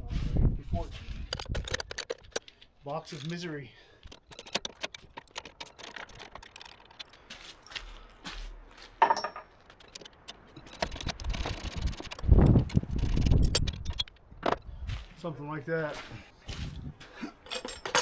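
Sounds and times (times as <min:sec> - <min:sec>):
metal tools clinking and rattling: 0:01.2 - 0:07.8, 0:09.0 - 0:14.6, 0:17.4 - 0:18.0.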